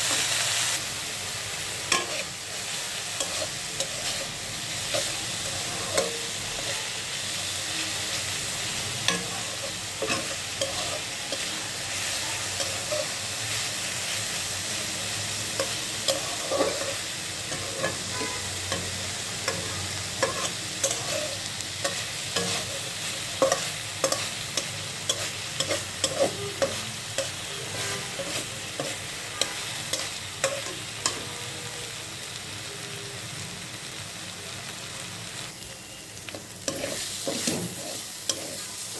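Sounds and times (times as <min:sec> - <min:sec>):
greens sizzling in a pan: 0:00.0 - 0:38.9
spatula scraping and knocking pan: 0:19.5 - 0:21.3, 0:36.6 - 0:38.7.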